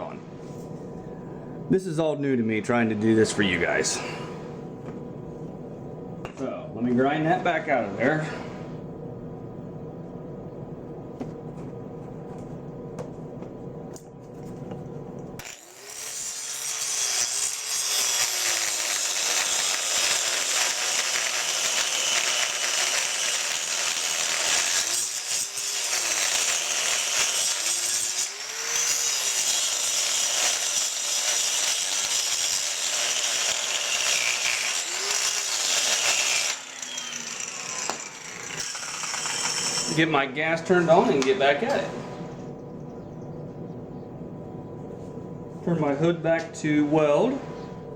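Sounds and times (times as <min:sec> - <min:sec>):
hand grinder grinding steel: 0:15.4 - 0:40.1.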